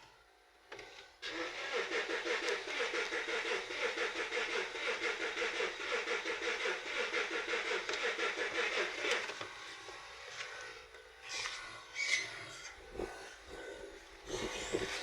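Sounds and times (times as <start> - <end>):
engine cranking on starter motor: 1.2 - 9.3.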